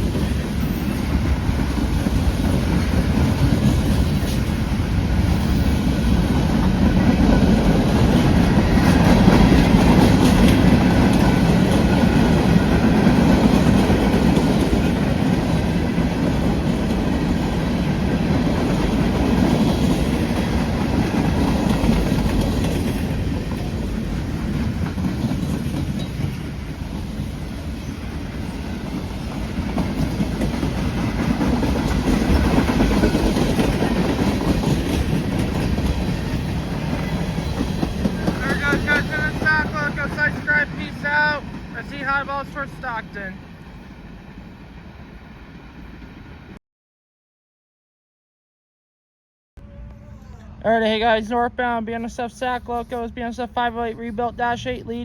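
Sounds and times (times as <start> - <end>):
train wheels clattering on rails: 0.0 - 42.1.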